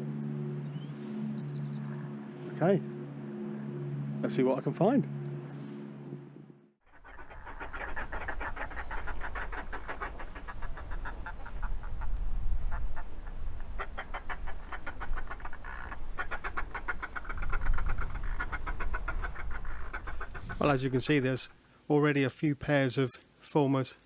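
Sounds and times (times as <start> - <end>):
seabirds cackling: 6.9 - 21.5.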